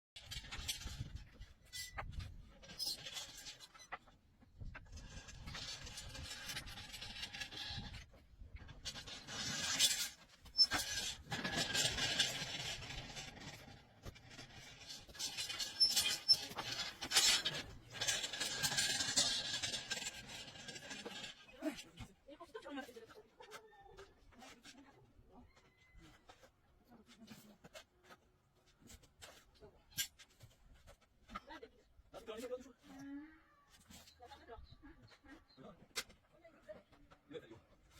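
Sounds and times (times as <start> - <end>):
rough scraping and rubbing: 0.2 - 25.0.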